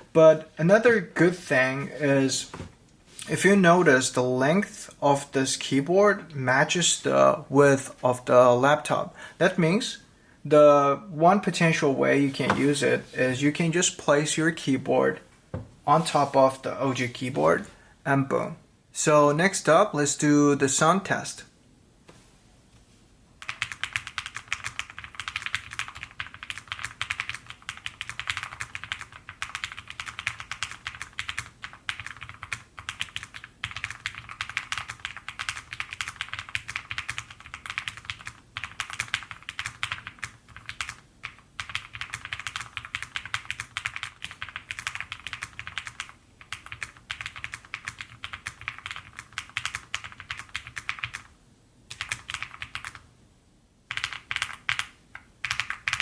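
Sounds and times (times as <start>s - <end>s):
mechanical keyboard typing: 23.4s - 51.3s, 51.9s - 53.0s, 53.9s - 56.0s.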